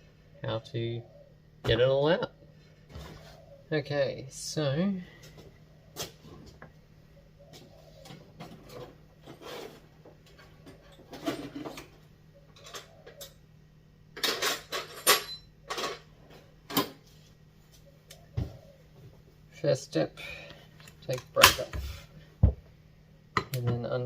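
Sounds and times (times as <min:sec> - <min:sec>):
faint steady hum: 0:00.0 - 0:24.0
tools clicking and rattling: 0:20.8 - 0:21.8.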